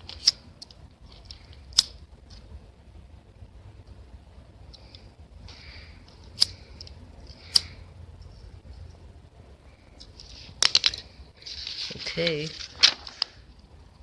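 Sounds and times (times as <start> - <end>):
lighter gas hissing: 4.6 - 8.0.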